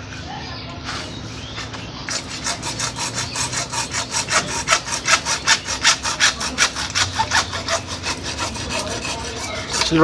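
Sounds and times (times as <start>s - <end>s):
hand saw cutting plastic pipe: 2.1s - 10.0s.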